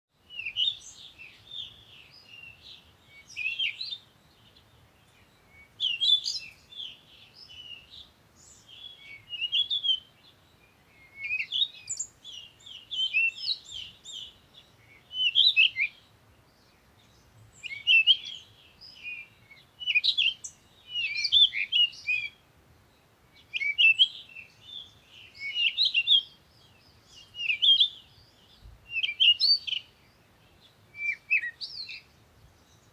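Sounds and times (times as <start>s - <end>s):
small birds chirping: 0.2s - 32.9s.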